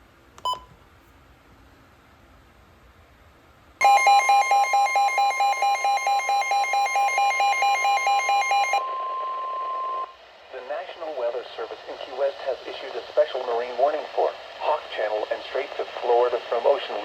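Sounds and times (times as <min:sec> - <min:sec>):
receiver alarm beeping: 0:03.8 - 0:10.2
steady warning alarm tone: 0:03.8 - 0:10.2.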